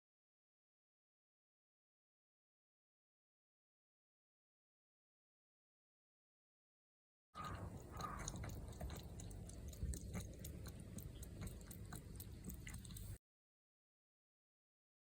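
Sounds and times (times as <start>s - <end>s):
crunchy chewing: 7.4s - 13.2s
low steady rumble: 7.4s - 13.2s.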